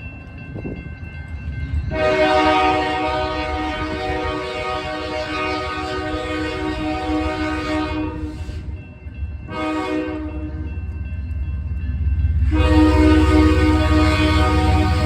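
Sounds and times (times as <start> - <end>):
locomotive engine rumble: 0.0 - 15.0
locomotive air horn blasts: 1.9 - 8.6, 9.5 - 10.6, 12.4 - 15.0.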